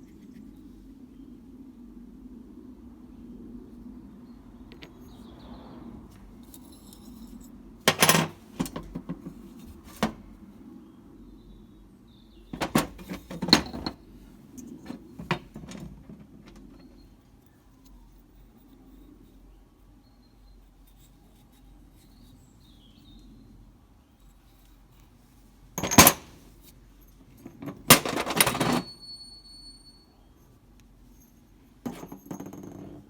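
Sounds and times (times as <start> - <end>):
metal tools clinking: 6.4 - 10.2, 12.6 - 14.0, 14.6 - 17.0, 25.8 - 26.5, 27.1 - 30.0, 31.1 - 33.0.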